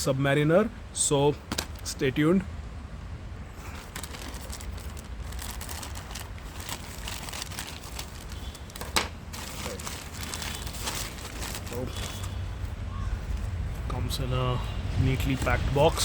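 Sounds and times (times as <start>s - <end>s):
packaging rustling and crinkling: 1.5s - 1.9s, 3.6s - 12.7s.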